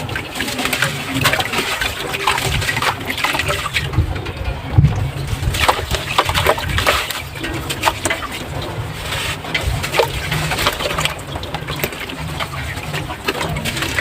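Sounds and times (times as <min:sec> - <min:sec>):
cement crumbling in water: 0:00.0 - 0:14.0
watery wash: 0:00.0 - 0:14.0.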